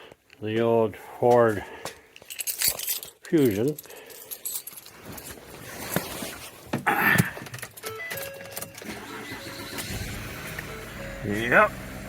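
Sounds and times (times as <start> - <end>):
car keys jangling: 2.2 - 5.5, 7.4 - 9.7.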